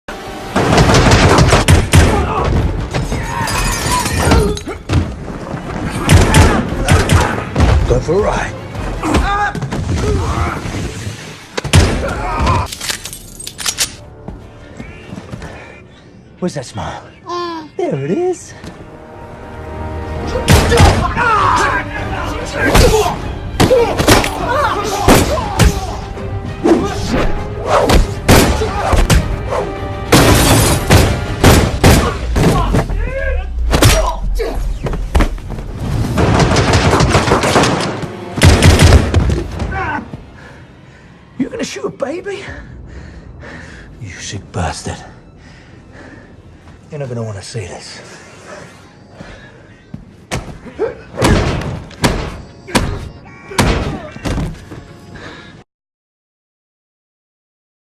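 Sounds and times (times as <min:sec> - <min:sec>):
action film music: 0:00.1 - 0:55.6.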